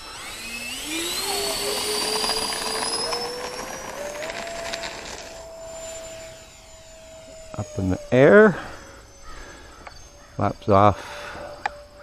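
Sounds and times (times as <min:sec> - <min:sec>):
electric ducted fans whining: 0:00.0 - 0:12.0.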